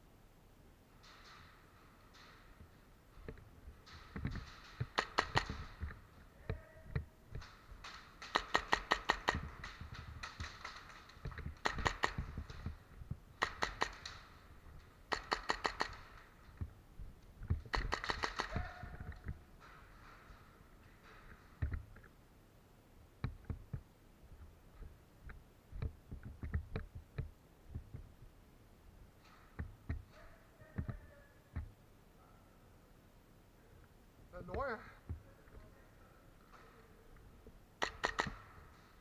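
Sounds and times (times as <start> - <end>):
airsoft guns firing bursts: 8.2 - 12.6, 15.1 - 16.2, 17.7 - 18.9.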